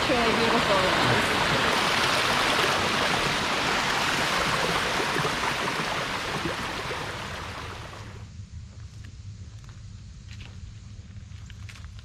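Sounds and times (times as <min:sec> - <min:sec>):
waterfall rushing water: 0:00.0 - 0:08.2.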